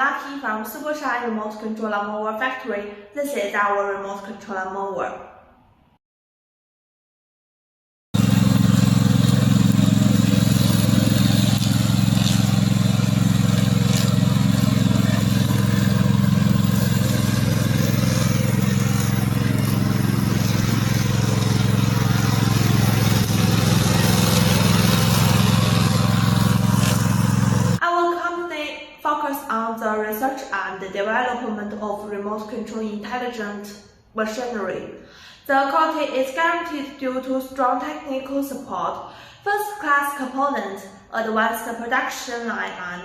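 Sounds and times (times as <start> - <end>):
mower engine running: 8.2 - 27.8.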